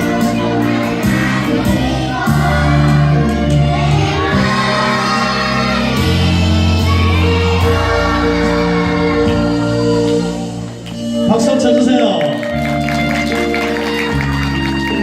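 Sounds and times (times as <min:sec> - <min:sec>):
group of voices singing: 0:00.0 - 0:10.7
instrumental accompaniment: 0:00.0 - 0:15.0.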